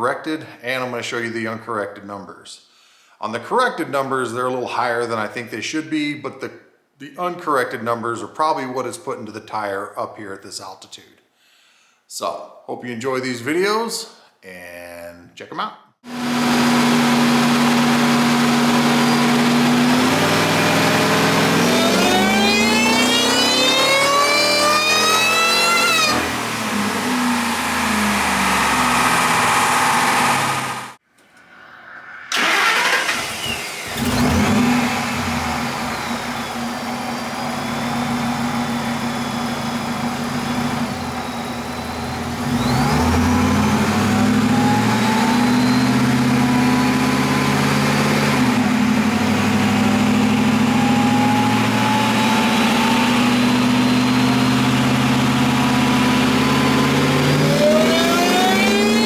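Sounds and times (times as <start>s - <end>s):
supercharged engine revving on dyno: 16.1s - 31.0s, 32.3s - 59.0s.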